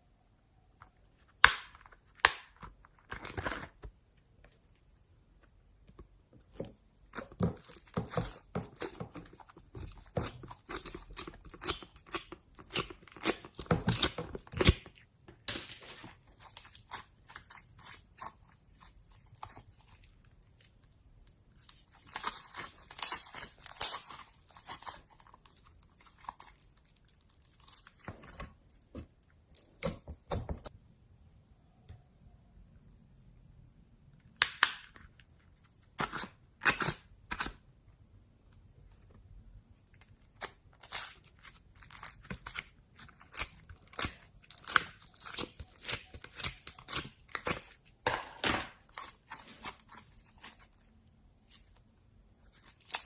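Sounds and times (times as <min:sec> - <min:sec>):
slime crackling and popping: 0:07.1 - 0:15.0, 0:22.0 - 0:27.8.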